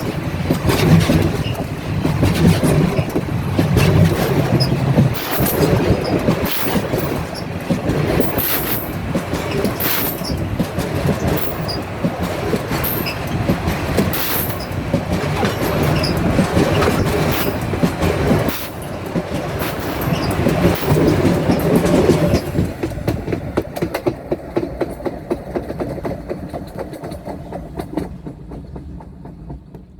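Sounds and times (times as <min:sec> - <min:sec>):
freight wagons rolling overhead: 0:00.0 - 0:22.5
wheels clattering over rail joints: 0:00.0 - 0:29.9.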